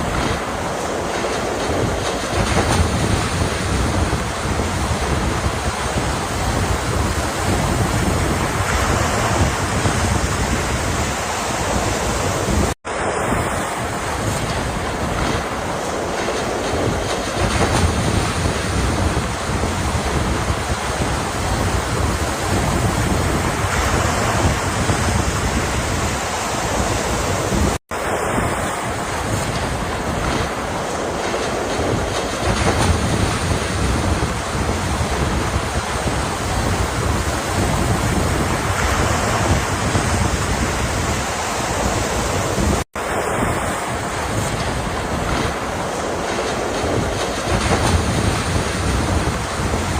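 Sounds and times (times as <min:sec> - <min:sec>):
waves breaking: 0:00.0 - 0:49.9.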